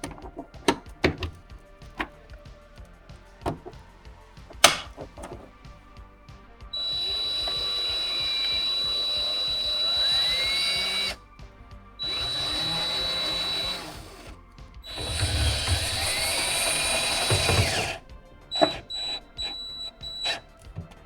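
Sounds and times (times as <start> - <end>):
background music: 0.0 - 21.0
power drill spinning: 0.0 - 21.0.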